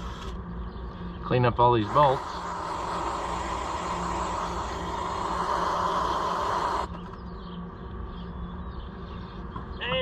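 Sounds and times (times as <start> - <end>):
low hum: 0.0 - 9.8
power tool whirring: 1.8 - 7.0.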